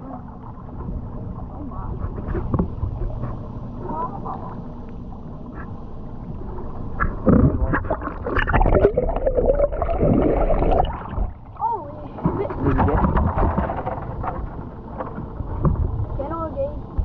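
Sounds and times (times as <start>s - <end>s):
boat motor humming: 0.0s - 17.0s
water and wind noise: 0.0s - 17.0s
knocks and splashing: 7.0s - 16.2s.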